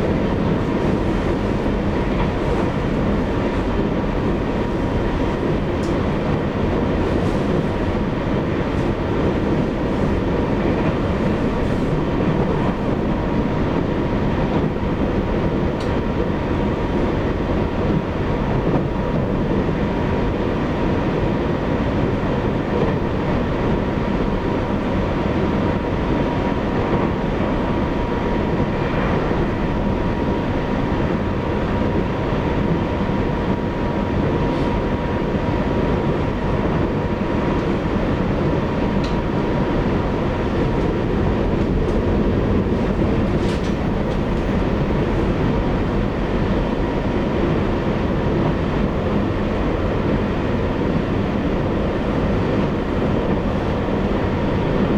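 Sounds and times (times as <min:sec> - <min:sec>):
train wheels rumbling on rail: 0:00.0 - 0:54.9.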